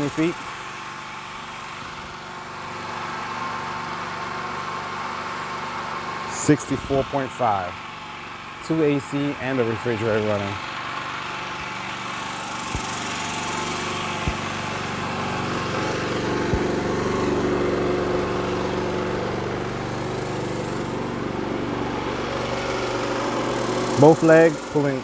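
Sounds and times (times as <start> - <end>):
generator engine running: 0.0 - 25.0.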